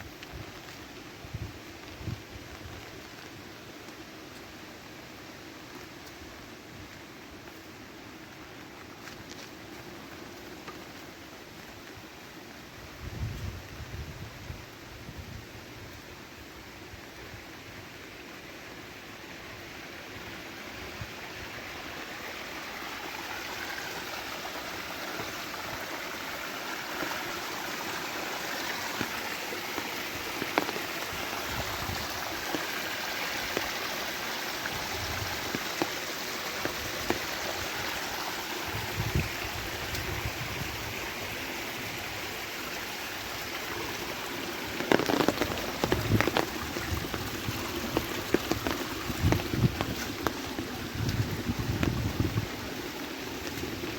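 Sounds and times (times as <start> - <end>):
steady rain: 0.0 - 53.9
running water: 17.0 - 53.9.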